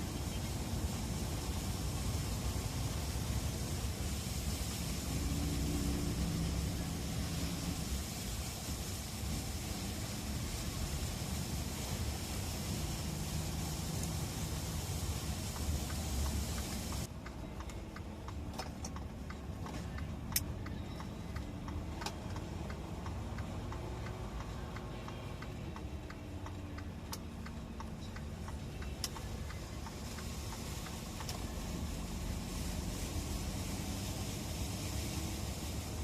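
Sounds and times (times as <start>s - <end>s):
car engine low rumble: 0.0s - 36.0s
regular ticking: 11.4s - 32.3s.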